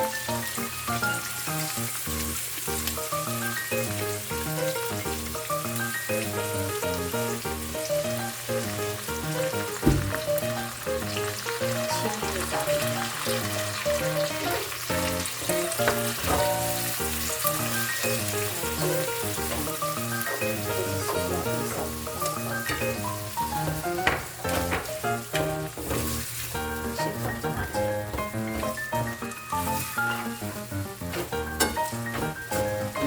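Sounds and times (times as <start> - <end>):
background music: 0.0 - 33.0
food sizzling in a pan: 0.0 - 33.0
single knock: 9.8 - 10.3.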